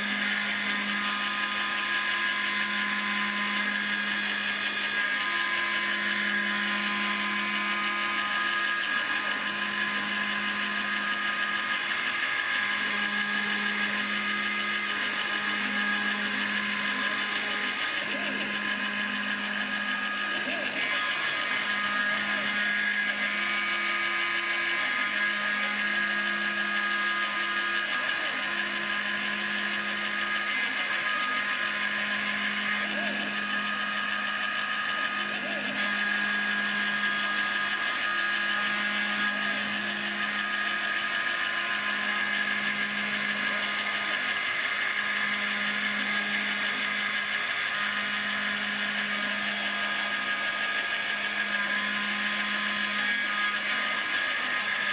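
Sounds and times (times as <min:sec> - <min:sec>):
low hums of moving axes: 0:00.0 - 0:54.9
spindle motor whining: 0:00.0 - 0:54.9.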